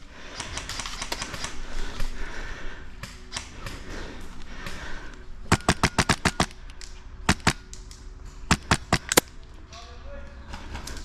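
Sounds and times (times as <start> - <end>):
airsoft rifle shots: 5.5 - 6.6, 7.2 - 7.6, 8.5 - 9.3.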